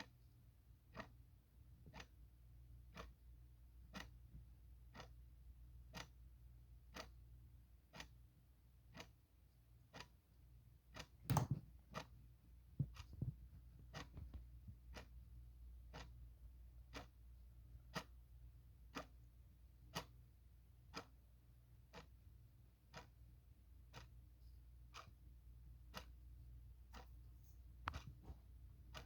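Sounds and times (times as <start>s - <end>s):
clock ticking: 0.0s - 29.0s
soft thumps: 11.3s - 11.7s.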